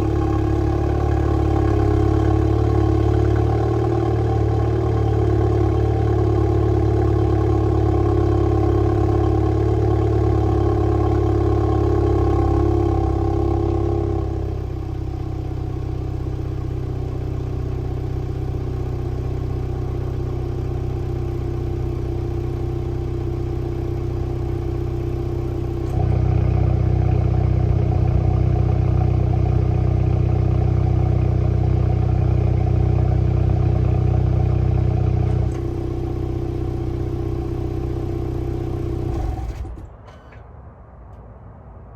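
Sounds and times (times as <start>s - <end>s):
car engine idling: 0.0s - 40.4s.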